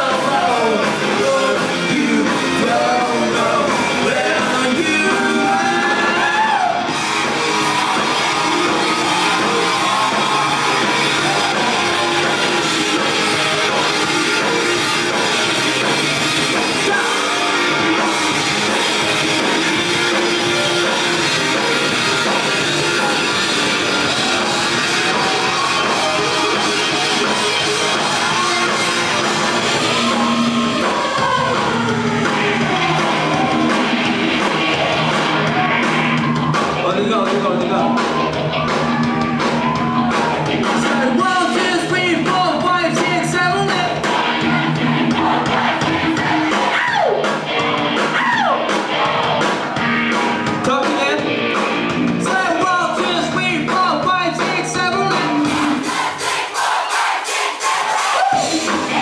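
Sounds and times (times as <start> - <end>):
person singing lead vocal: 0.0 - 15.9, 16.5 - 21.0, 21.6 - 36.2, 40.0 - 47.3, 52.2 - 56.2
live rock band playing: 0.0 - 57.5, 58.2 - 59.0.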